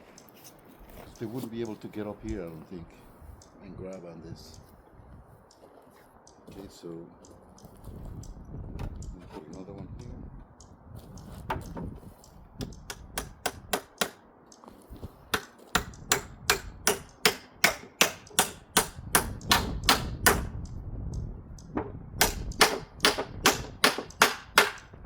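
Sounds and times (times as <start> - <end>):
hammer driving nail into wood: 12.6 - 14.2, 15.3 - 20.5, 22.2 - 25.0.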